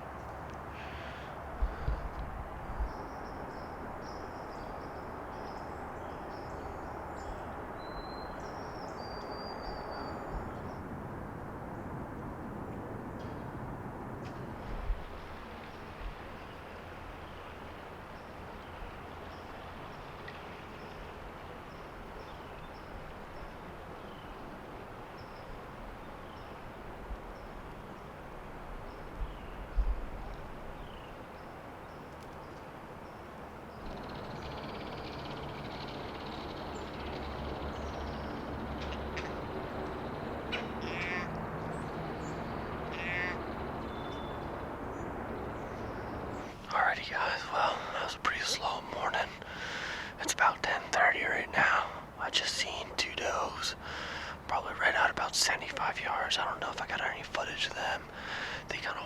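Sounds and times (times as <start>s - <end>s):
faint small birds calling: 0.0s - 10.8s, 28.8s - 59.0s
steady background hiss: 0.0s - 59.0s.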